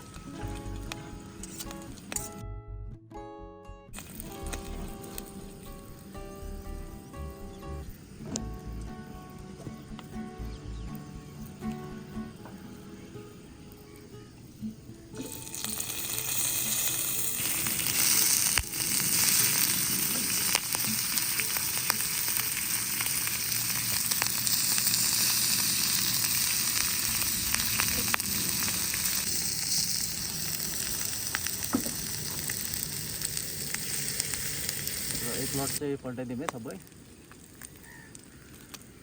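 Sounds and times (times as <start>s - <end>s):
oil popping and crackling: 3.9s - 6.6s, 15.2s - 39.0s
meat sizzling in oil: 4.0s - 6.6s, 15.2s - 35.8s.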